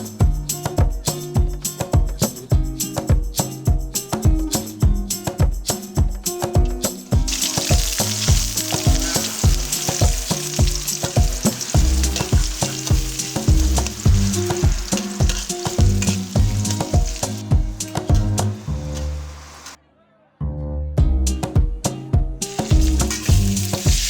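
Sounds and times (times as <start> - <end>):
background music with steady beat: 0.0 - 19.5, 21.0 - 24.0
food sizzling in hot oil: 7.2 - 19.8, 22.4 - 24.0.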